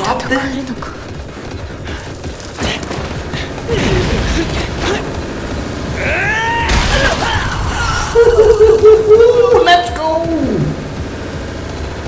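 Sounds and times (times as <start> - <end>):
bending wailing whine: 4.7 - 12.0.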